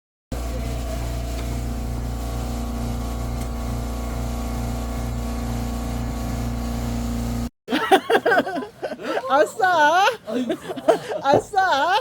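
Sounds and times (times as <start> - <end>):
vehicle engine drone: 0.3 - 7.5
people talking and laughing: 7.7 - 12.0.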